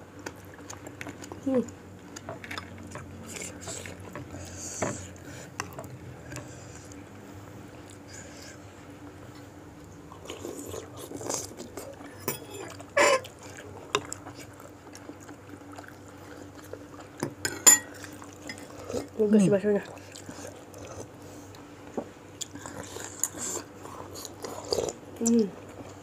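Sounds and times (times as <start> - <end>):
faint steady hum: 0.0 - 26.0
cutlery clinking against a bowl: 17.2 - 18.7.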